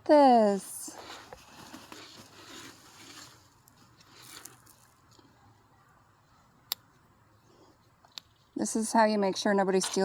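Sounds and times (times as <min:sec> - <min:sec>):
faint rustling of packing: 0:00.8 - 0:05.4.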